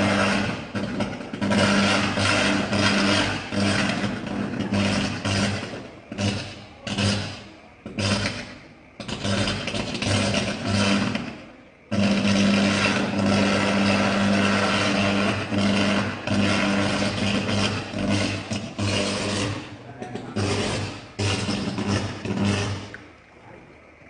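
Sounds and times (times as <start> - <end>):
electrical arcing crackling buzz: 0.0 - 19.8, 20.4 - 23.2
mains hum: 0.0 - 24.0.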